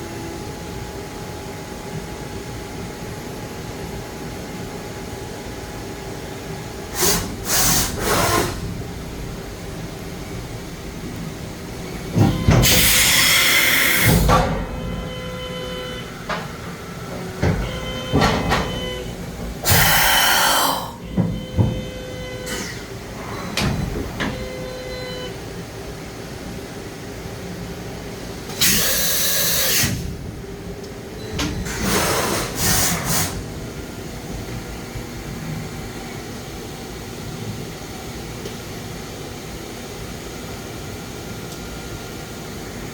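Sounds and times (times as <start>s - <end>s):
loud hissing bursts: 7.0s - 8.6s, 12.6s - 14.3s, 19.6s - 21.0s, 28.6s - 30.1s, 31.7s - 33.4s
machine clunks and clicks: 12.1s - 13.0s, 16.3s - 19.6s, 21.0s - 22.8s, 23.5s - 24.5s, 31.2s - 31.9s
short machine whines: 12.2s - 16.8s, 17.6s - 25.4s.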